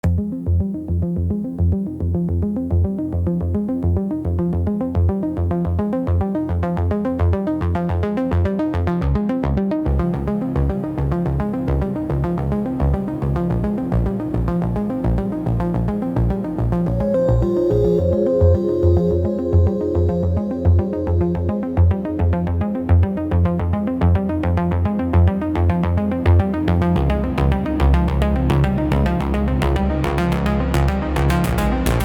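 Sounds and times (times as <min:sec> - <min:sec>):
pulsing bass line: 0:09.9 - 0:32.0
techno synthesizer sequence: 0:16.8 - 0:23.0.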